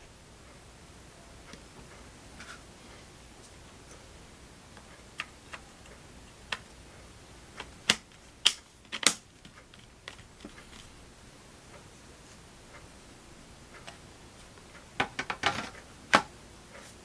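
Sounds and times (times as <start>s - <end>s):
small parts clicking and tapping: 7.5s - 10.9s, 15.0s - 16.3s.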